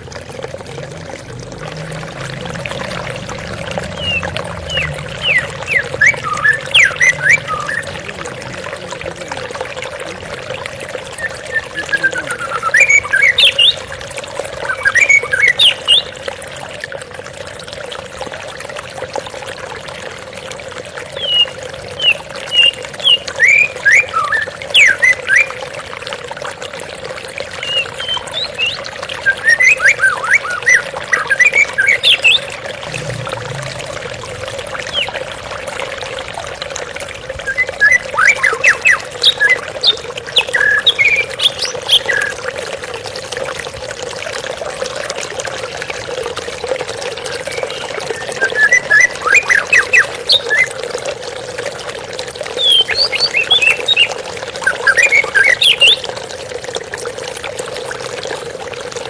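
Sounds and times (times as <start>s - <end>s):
flowing water: 0.0s - 59.0s
bird singing whistled phrases: 4.0s - 8.0s, 11.2s - 13.8s, 47.5s - 50.7s, 52.6s - 54.1s.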